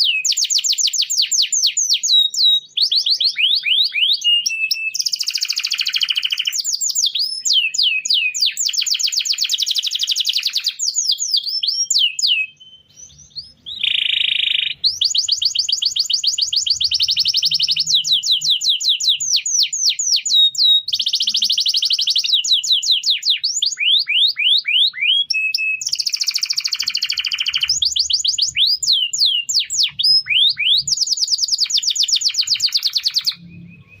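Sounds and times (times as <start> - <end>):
canary singing: 0.0 - 34.0.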